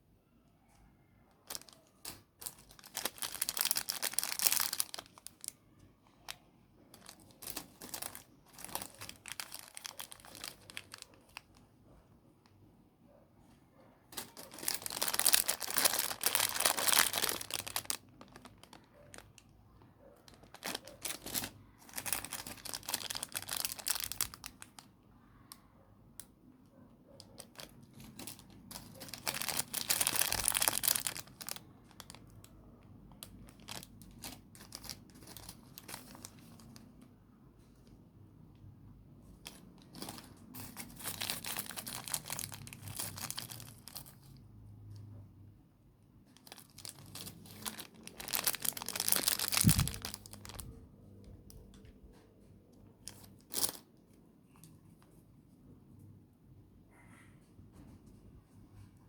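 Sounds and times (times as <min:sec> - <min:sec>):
packaging crinkling and tearing: 0:01.5 - 0:05.6, 0:07.0 - 0:11.6, 0:14.2 - 0:19.4, 0:20.0 - 0:24.9, 0:27.2 - 0:32.5, 0:33.1 - 0:36.8, 0:39.4 - 0:44.4, 0:46.4 - 0:50.8, 0:53.0 - 0:53.9.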